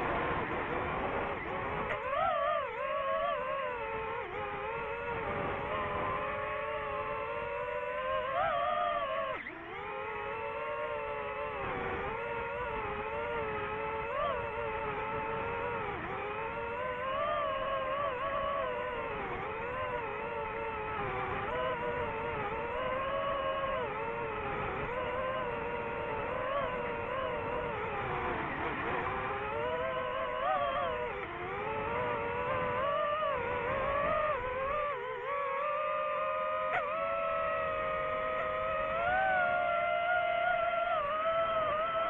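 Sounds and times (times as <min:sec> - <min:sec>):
drone propellers whining: 0:00.0 - 0:42.0.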